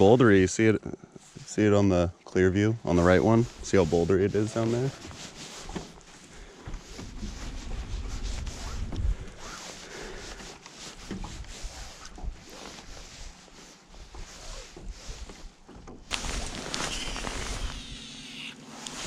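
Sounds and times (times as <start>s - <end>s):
microphone handling noise: 6.7s - 9.6s, 14.0s - 19.0s
wind buffeting microphone: 6.8s - 9.6s.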